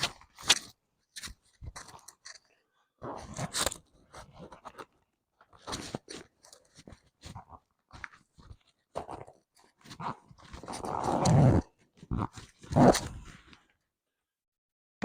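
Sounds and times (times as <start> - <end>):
rustling and clicking of small items: 0.0 - 2.6, 3.2 - 11.3.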